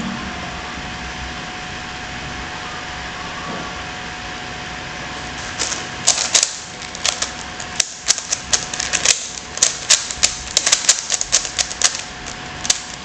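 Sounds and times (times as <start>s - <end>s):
steady background hum: 0.0s - 13.0s
puzzle cube faces clicking: 5.6s - 13.0s.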